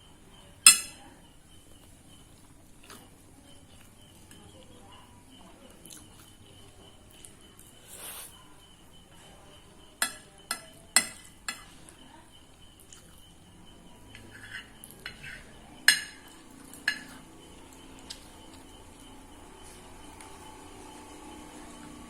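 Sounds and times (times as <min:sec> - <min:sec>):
cutlery clinking on a plate: 0:00.6 - 0:01.1, 0:10.0 - 0:11.8, 0:14.1 - 0:17.3.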